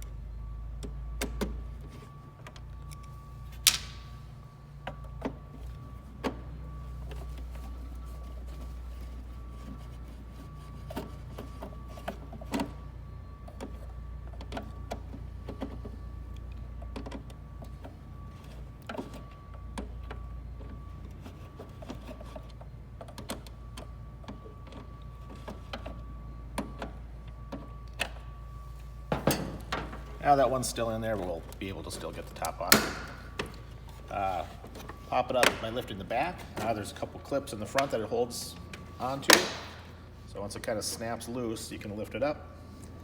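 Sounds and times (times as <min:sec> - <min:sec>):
steady hum: 0:27.9 - 0:43.0.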